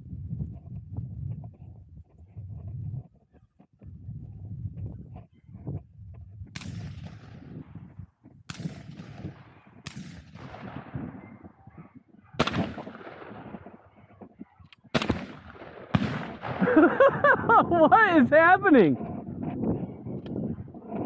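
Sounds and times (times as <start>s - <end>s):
shotgun shots: 8.5s - 11.2s, 12.4s - 13.8s, 14.9s - 16.8s.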